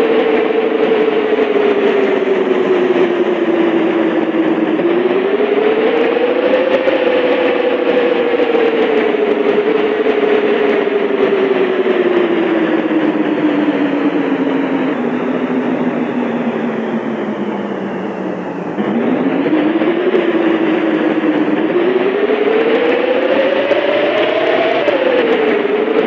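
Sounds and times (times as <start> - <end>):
bus engine whine and rumble: 0.0 - 26.0.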